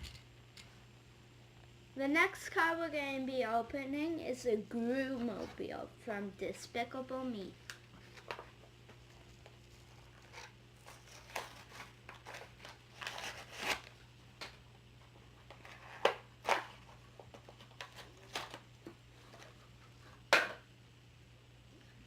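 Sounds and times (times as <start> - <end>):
blister package being torn open: 10.2 - 14.0.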